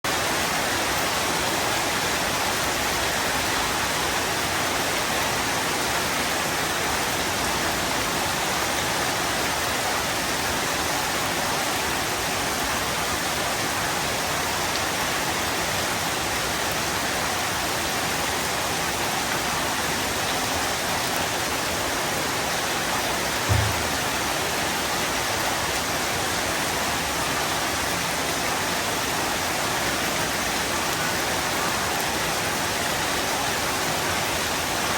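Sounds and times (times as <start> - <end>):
heavy rain pouring: 0.1 - 34.9
brief low thump: 23.5 - 24.2.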